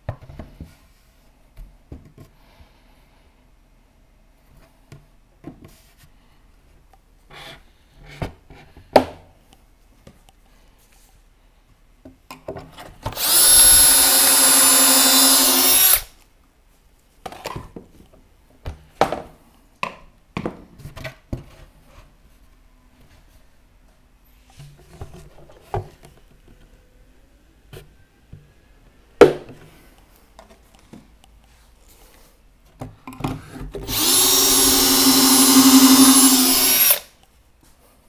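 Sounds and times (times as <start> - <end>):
power drill boring into plywood: 13.1 - 16.1, 33.8 - 37.1.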